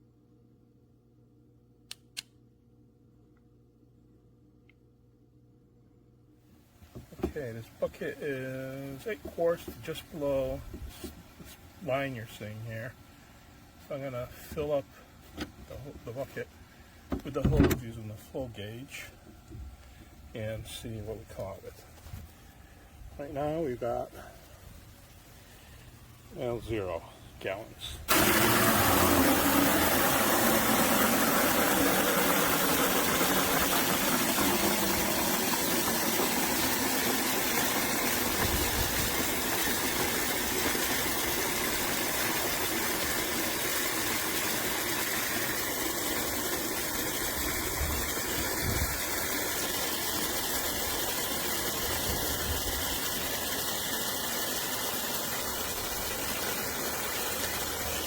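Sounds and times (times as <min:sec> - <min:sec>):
hose water rushing into bucket: 0:06.8 - 0:13.0, 0:23.2 - 0:58.0.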